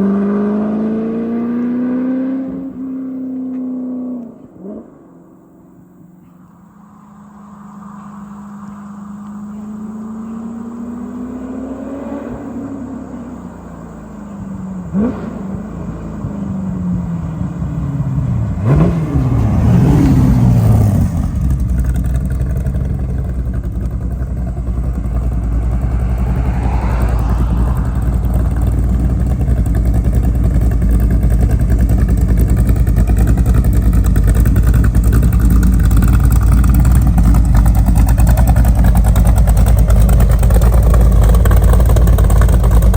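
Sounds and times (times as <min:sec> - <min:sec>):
car engine driving past: 0:00.0 - 0:42.9.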